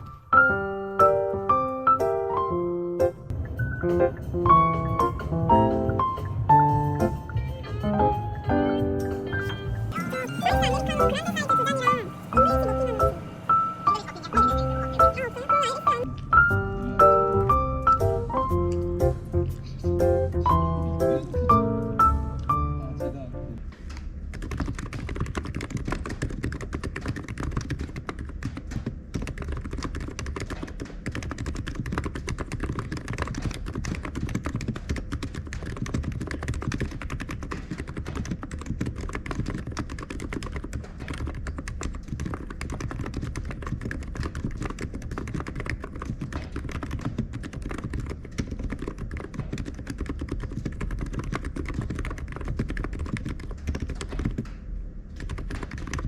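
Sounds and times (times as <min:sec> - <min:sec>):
computer keyboard typing: 0:10.0 - 0:16.1, 0:24.2 - 0:54.5, 0:55.2 - 0:56.0.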